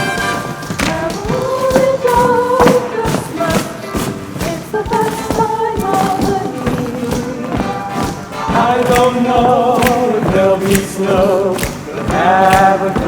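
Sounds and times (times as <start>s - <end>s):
musical accompaniment with steady beat: 0.0s - 13.0s
choir singing held notes: 6.3s - 13.0s.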